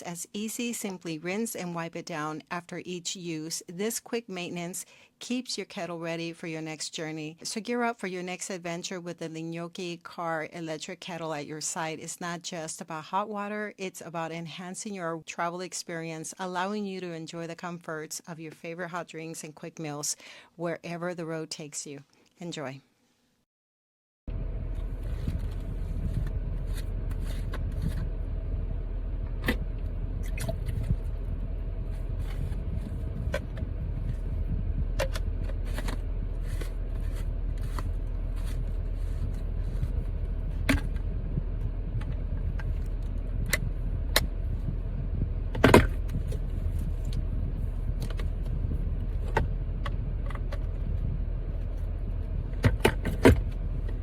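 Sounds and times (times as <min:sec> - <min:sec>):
car cabin rumble: 0:24.3 - 0:54.0.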